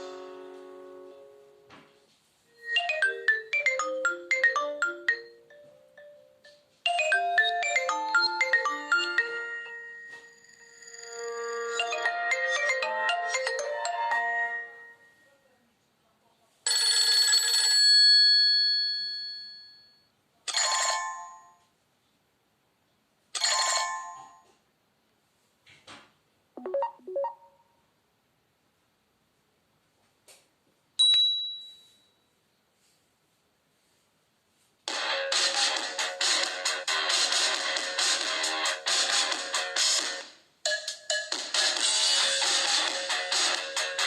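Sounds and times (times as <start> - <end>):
phone ringtone melody: 2.5 - 15.1, 26.6 - 27.6
short chime: 31.0 - 32.3.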